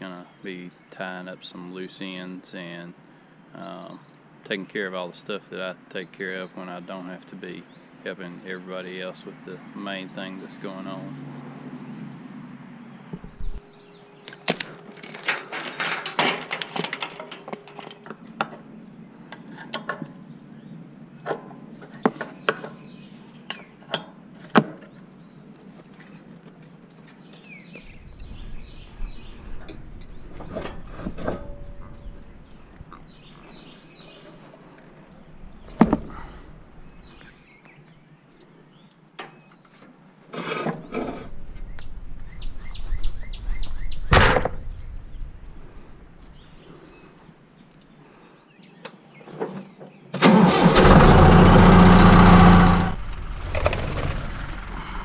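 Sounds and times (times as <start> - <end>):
clicks and knocks: 14.4 - 18.6
low rumbling noise: 27.8 - 34.4, 35.0 - 37.2, 40.9 - 47.0, 50.6 - 55.0
vehicle engine starting and running: 50.2 - 55.0.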